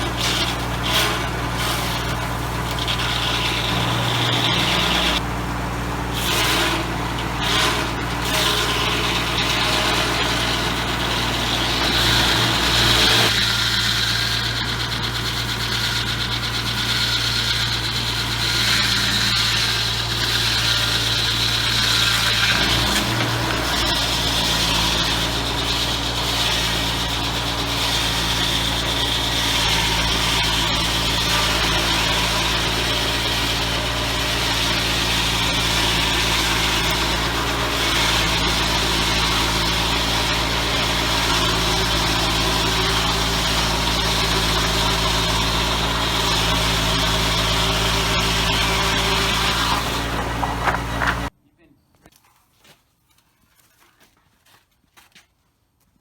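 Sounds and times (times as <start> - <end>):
circular saw blade whining: 0.0 - 51.3
tractor engine humming: 0.0 - 51.4.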